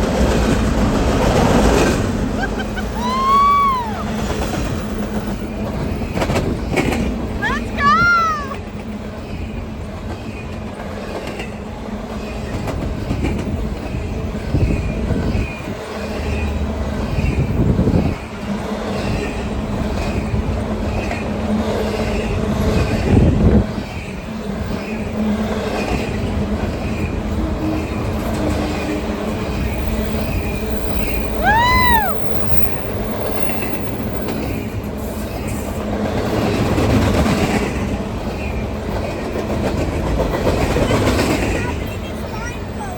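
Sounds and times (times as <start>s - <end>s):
train wheels clattering: 8.8s - 42.6s.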